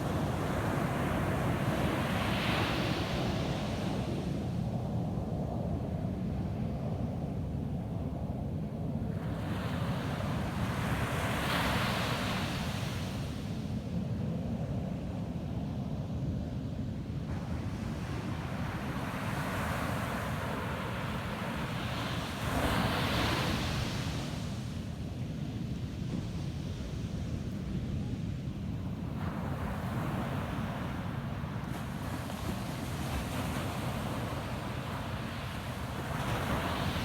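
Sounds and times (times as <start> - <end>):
waves crashing on a beach: 0.0 - 4.6, 9.1 - 13.7, 17.3 - 26.6, 27.3 - 37.0
low rumble of surf: 0.0 - 37.0.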